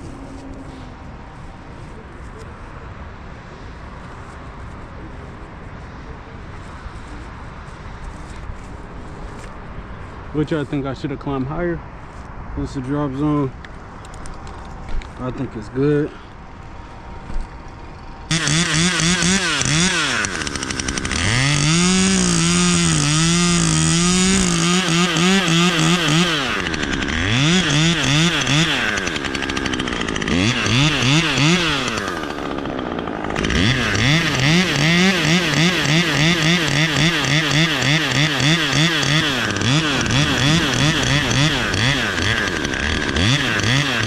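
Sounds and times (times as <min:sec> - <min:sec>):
chainsaw cutting wood: 0:17.4 - 0:44.0.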